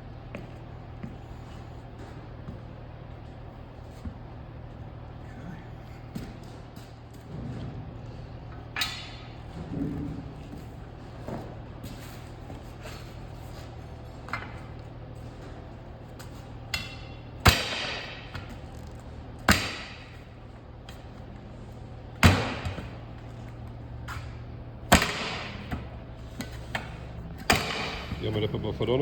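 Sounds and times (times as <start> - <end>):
loud ringing hammer strikes: 16.7 - 18.4, 24.9 - 25.8, 27.5 - 28.4.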